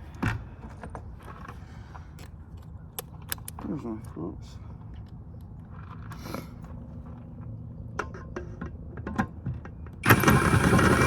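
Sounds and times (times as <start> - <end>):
tools clicking against metal: 2.2 - 3.6.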